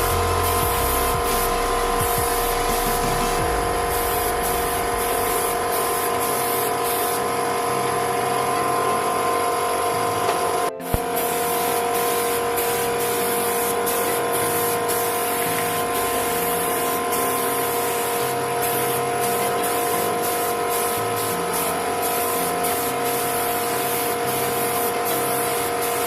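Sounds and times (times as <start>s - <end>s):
spray gun hissing: 0.0s - 8.2s, 10.9s - 26.0s
steady machine hum: 0.0s - 19.6s.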